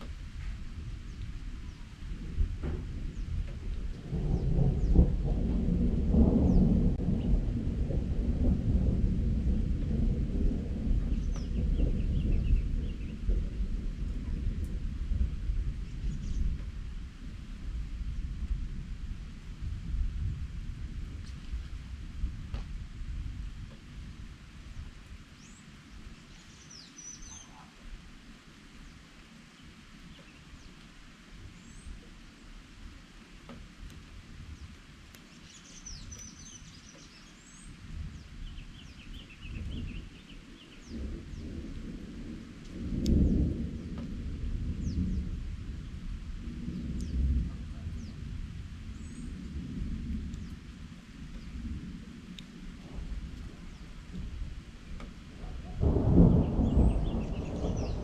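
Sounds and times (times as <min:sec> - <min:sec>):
thunder rumbling: 0:00.0 - 0:25.0, 0:37.4 - 0:58.0
birds chirping: 0:25.4 - 0:27.8, 0:34.6 - 0:41.5, 0:55.3 - 0:58.0
faint bird chirps: 0:26.2 - 0:27.8.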